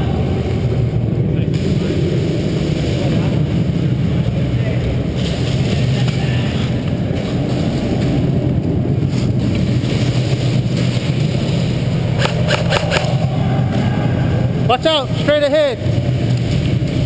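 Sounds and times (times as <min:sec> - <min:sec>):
low mechanical hum: 0:00.0 - 0:17.0
airsoft gun burst: 0:12.1 - 0:13.3.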